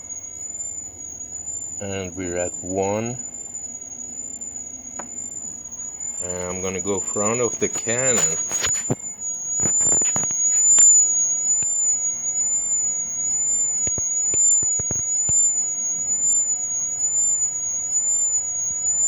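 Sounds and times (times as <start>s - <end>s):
high-pitched electronic tone: 5.8s - 19.0s.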